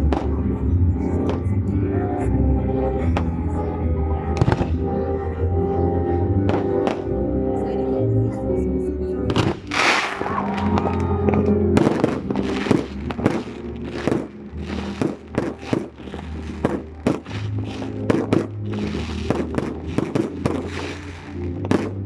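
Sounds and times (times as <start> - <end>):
music with held low notes: 0.0 - 22.0
fireworks bangs and crackling: 4.4 - 4.7, 9.3 - 22.0.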